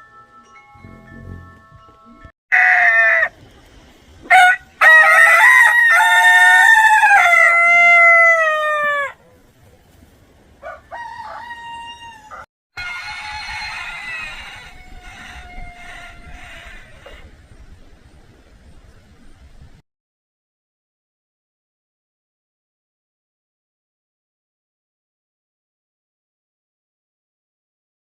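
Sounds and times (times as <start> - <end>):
rooster crowing: 2.5 - 3.3, 4.3 - 9.2, 10.6 - 17.3.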